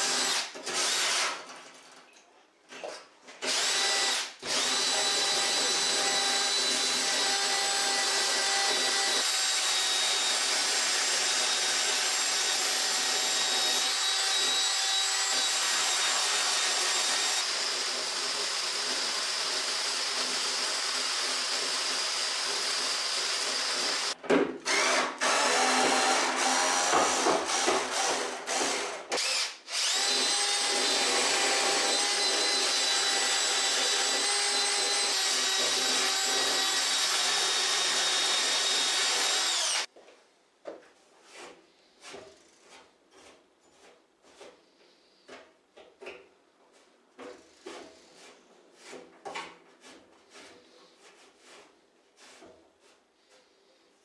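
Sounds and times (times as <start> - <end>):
power drill motor whine: 29.2 - 30.6, 36.1 - 39.9.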